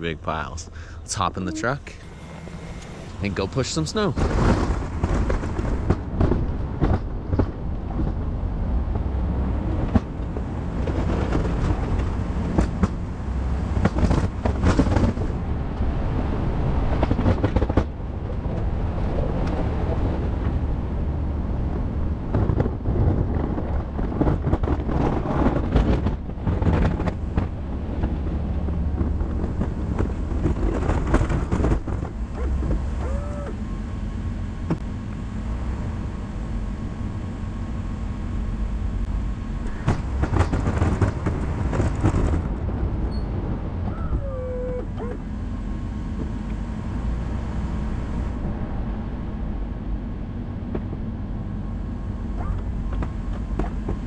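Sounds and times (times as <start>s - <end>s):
pickup truck engine rumbling: 0.0s - 54.0s
snow plow knocks and thumps: 22.2s - 33.0s, 39.8s - 43.9s.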